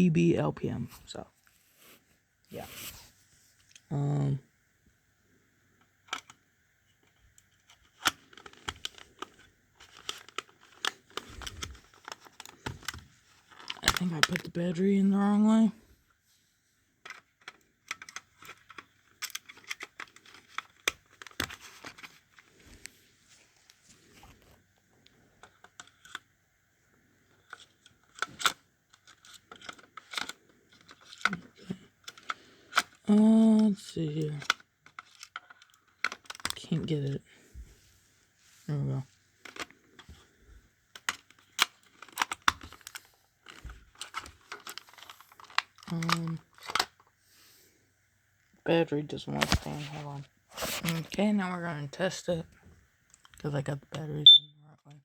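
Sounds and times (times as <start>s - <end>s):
plastic clicks and rustling: 5.8s - 15.0s, 17.0s - 23.0s, 23.6s - 26.3s, 27.0s - 37.0s, 39.4s - 47.2s, 49.3s - 51.3s, 52.0s - 54.4s
plastic clicks and knocks: 7.0s - 14.5s.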